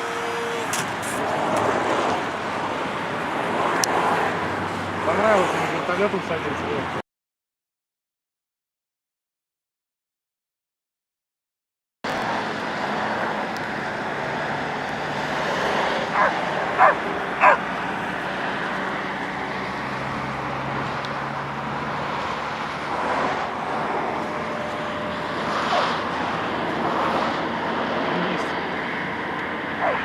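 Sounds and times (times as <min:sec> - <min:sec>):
dog barking: 0:16.1 - 0:17.6, 0:25.7 - 0:26.0, 0:29.8 - 0:30.0.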